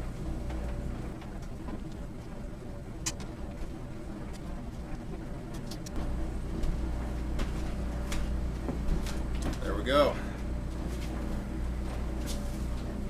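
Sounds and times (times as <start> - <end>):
steady low hum: 0.0 - 13.0
sharp clicks and knocks: 3.0 - 3.4, 5.5 - 6.0.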